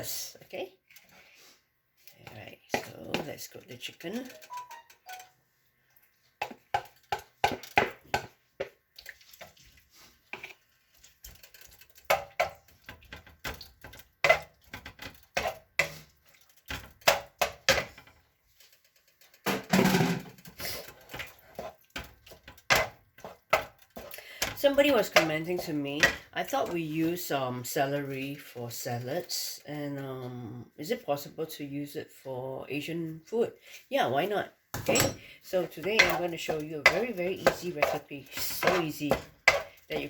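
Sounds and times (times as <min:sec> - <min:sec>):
utensils clanking in a pan: 0:04.1 - 0:05.4, 0:34.8 - 0:40.0.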